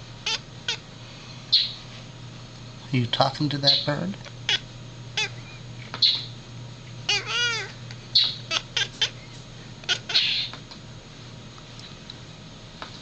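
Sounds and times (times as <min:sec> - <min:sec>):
cat chirping: 0:00.2 - 0:00.8, 0:01.5 - 0:01.8, 0:05.2 - 0:06.3, 0:07.1 - 0:10.5
cat mewing: 0:05.2 - 0:05.4, 0:07.1 - 0:09.2, 0:09.8 - 0:10.5.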